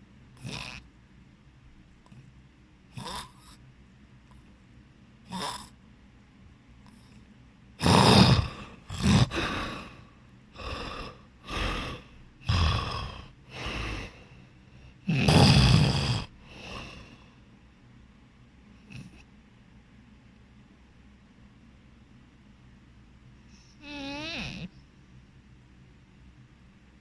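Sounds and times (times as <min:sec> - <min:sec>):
person snoring: 0:00.4 - 0:00.8, 0:03.0 - 0:03.6, 0:05.3 - 0:05.7, 0:07.8 - 0:10.0, 0:10.6 - 0:14.4, 0:15.0 - 0:17.3, 0:23.8 - 0:24.7.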